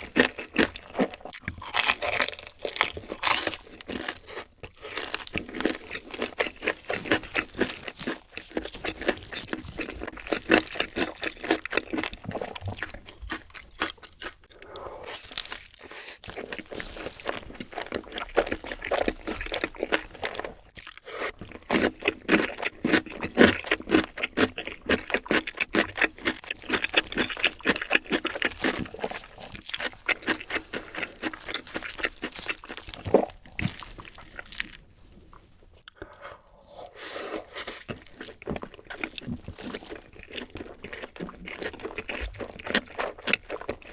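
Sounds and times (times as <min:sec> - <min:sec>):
crunching and chewing fried food: 0:00.0 - 0:43.9.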